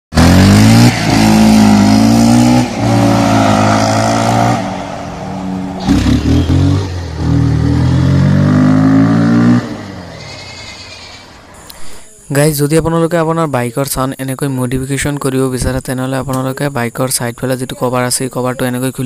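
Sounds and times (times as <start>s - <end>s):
motorcycle engine revving: 0.1s - 11.5s.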